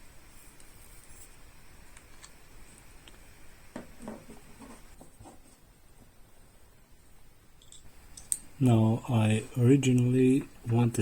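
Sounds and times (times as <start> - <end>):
small knocks and scrapes: 3.8 - 6.1.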